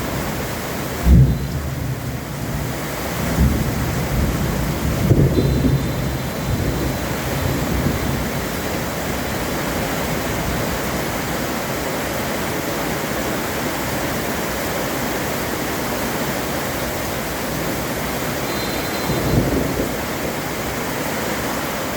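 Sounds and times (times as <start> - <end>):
heavy rain falling: 0.0 - 21.9
low thunder rumble: 1.0 - 9.3, 18.5 - 20.5.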